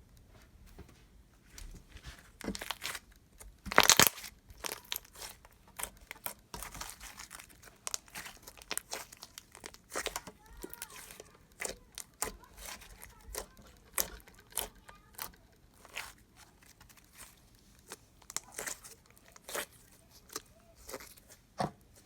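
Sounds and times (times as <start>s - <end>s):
sticky slime squishing and popping: 2.3s - 22.0s.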